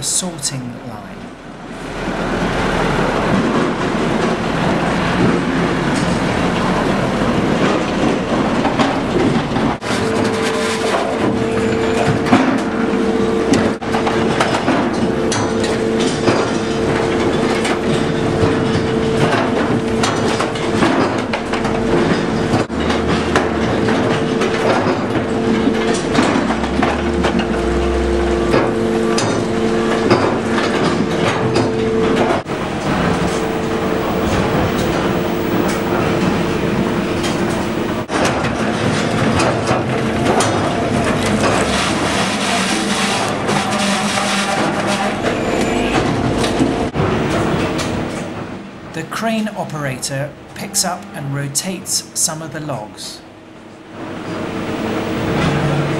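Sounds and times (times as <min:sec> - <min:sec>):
steady mechanical whine: 0:00.0 - 0:38.2, 0:53.2 - 0:55.9
logs and conveyor clattering: 0:13.5 - 0:48.6.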